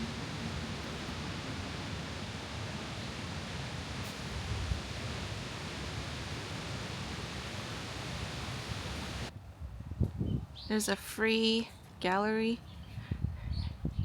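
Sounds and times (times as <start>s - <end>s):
waterfall rushing: 0.0s - 9.3s.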